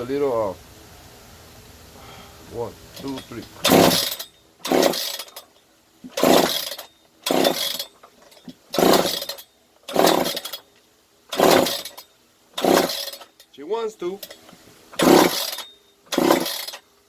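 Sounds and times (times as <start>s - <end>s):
saw engine rope pull-start whir: 3.0s - 10.7s, 11.3s - 16.9s.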